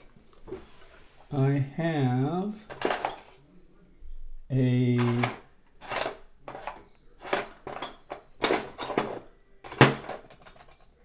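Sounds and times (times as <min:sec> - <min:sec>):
metal hand tools clinking: 0:02.7 - 0:03.4, 0:05.0 - 0:10.9.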